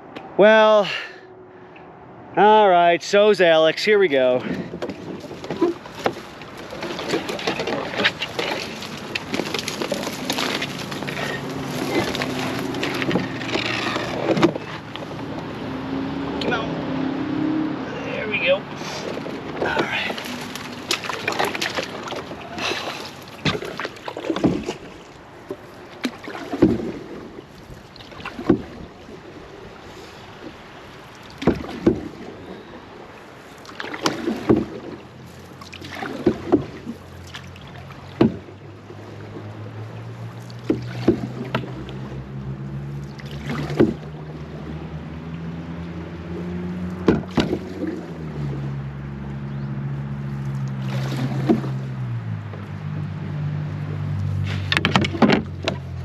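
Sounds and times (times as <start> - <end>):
water splashes: 2.0 - 56.0
paddle strokes: 3.5 - 16.9, 17.8 - 56.0
hollow knocks against canoe hull: 4.5 - 15.5, 19.1 - 27.2, 28.2 - 28.8, 31.4 - 32.2, 33.8 - 35.0, 35.7 - 37.5, 38.1 - 38.5, 40.5 - 42.2, 43.3 - 44.2, 46.4 - 48.2, 50.8 - 52.6, 54.5 - 56.0.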